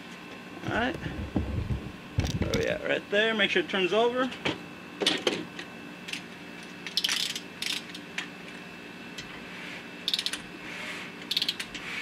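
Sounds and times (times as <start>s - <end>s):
ratchet wrench clicking: 10.1s - 10.4s, 11.3s - 11.7s.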